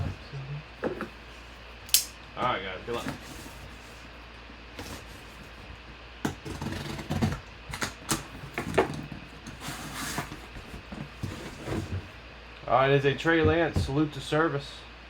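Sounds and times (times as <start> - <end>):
packaging scrapes rustles and knocks: 2.8 - 12.2.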